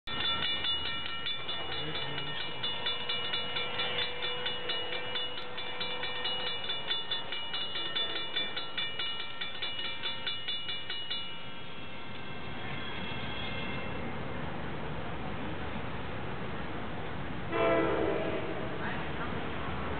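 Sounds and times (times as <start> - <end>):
crossing warning bell ringing: 0.1 - 14.3, 17.5 - 18.8.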